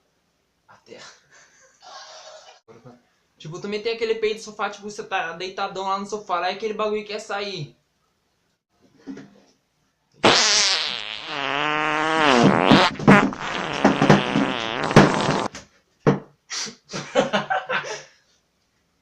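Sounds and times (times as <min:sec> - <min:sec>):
comic fart noise: 0:10.2 - 0:15.6.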